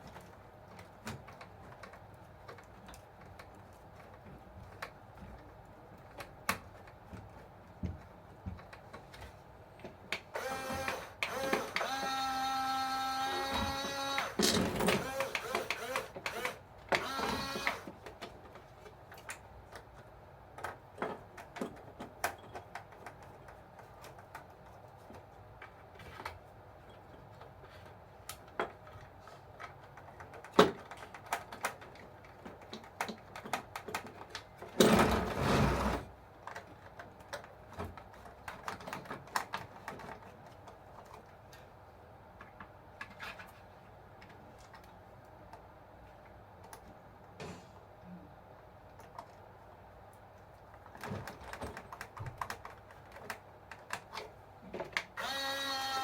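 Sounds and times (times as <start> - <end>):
motor whirring: 10.4 - 14.4, 55.2 - 56.0.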